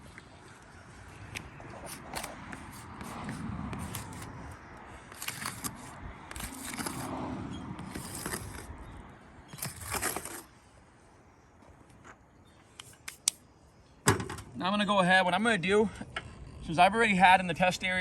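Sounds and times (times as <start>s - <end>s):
roof shingles scraping: 9.6s - 10.5s.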